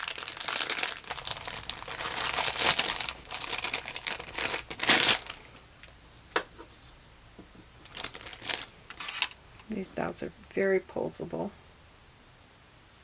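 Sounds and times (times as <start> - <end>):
packaging crinkling: 0.0 - 9.8.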